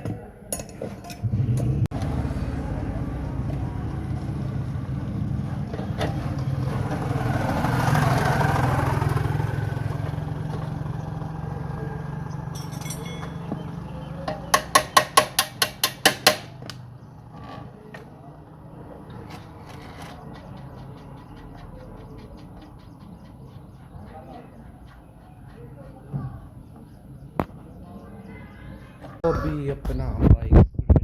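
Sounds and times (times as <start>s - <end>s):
motorcycle engine running: 1.1s - 28.1s
vehicle passing by: 1.2s - 14.5s, 16.4s - 29.2s
sharp knocks: 12.6s - 16.8s.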